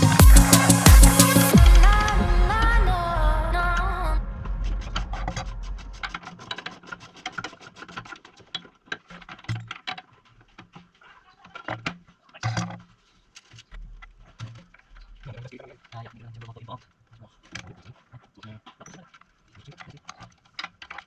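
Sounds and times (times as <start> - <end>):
background music: 0.0 - 6.1.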